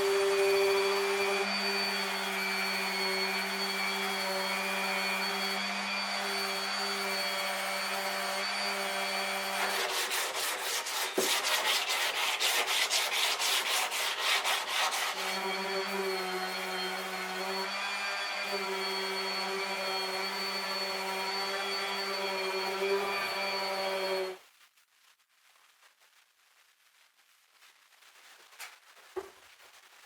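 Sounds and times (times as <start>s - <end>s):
rhythmic rubbing strokes: 7.4s - 15.7s.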